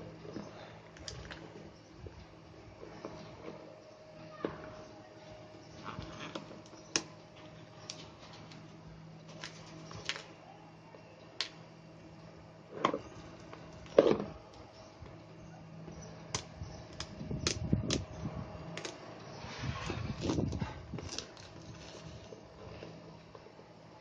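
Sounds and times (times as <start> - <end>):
faint steady hum: 0.0 - 24.0
cardboard packaging being handled: 19.7 - 23.0.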